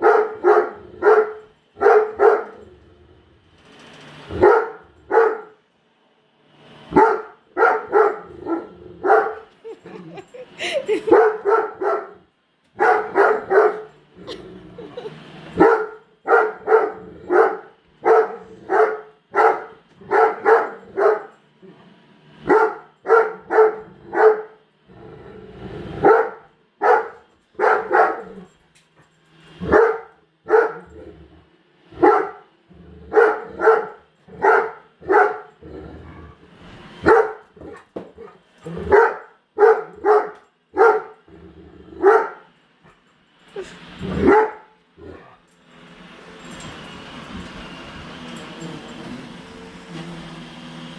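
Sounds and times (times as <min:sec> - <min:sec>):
dog barking: 0:00.0 - 0:02.7, 0:04.4 - 0:05.6, 0:06.9 - 0:10.0, 0:11.0 - 0:12.2, 0:12.8 - 0:14.0, 0:15.6 - 0:21.4, 0:22.5 - 0:24.6, 0:26.0 - 0:28.4, 0:29.6 - 0:31.0, 0:32.0 - 0:32.5, 0:33.1 - 0:35.6, 0:37.0 - 0:41.2, 0:42.0 - 0:42.5, 0:44.2 - 0:45.2.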